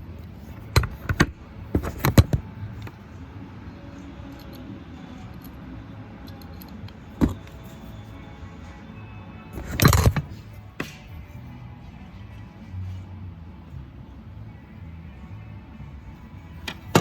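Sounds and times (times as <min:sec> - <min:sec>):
steady low hum: 0:00.0 - 0:17.0.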